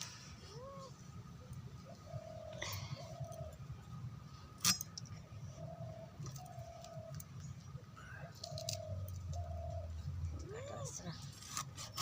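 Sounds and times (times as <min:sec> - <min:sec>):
pigeons cooing: 0:00.5 - 0:03.6, 0:05.3 - 0:11.1.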